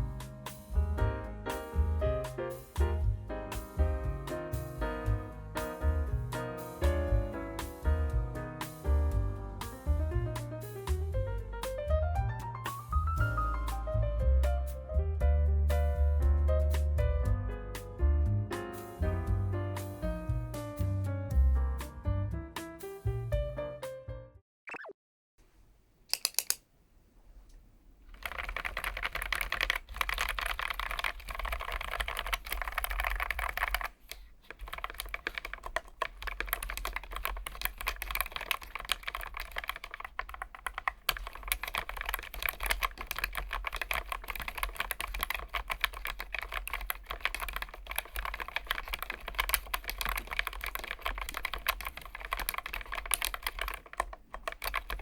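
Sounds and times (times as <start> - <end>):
mechanical keyboard typing: 26.1 - 26.6, 28.1 - 55.0.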